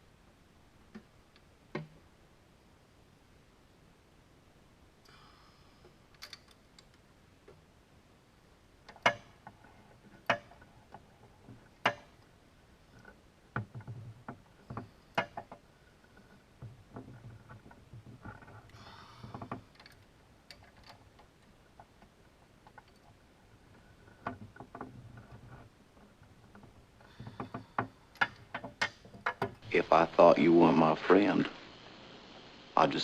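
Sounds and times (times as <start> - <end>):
soft rattling and handling: 8.7 - 29.6.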